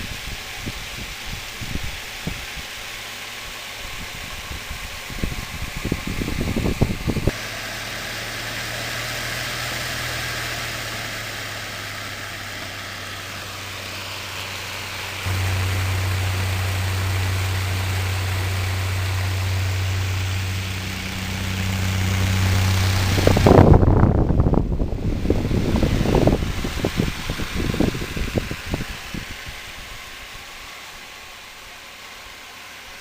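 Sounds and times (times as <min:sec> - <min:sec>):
fan air rushing: 0:00.0 - 0:33.0
low motor hum: 0:00.0 - 0:33.0
wind buffeting microphone: 0:04.0 - 0:07.4, 0:15.2 - 0:30.1.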